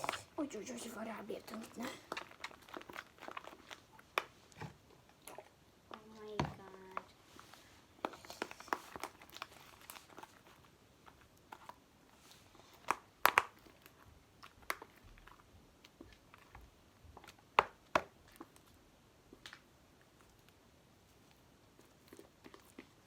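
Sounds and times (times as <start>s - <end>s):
slime sticky clicks and pops: 12.8s - 13.7s.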